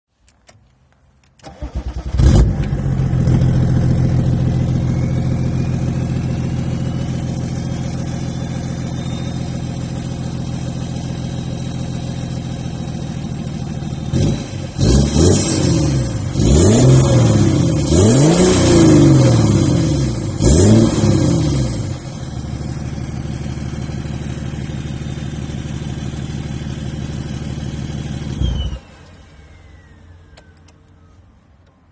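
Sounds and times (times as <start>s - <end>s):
unsilenced diesel engine revving: 13.6s - 30.1s.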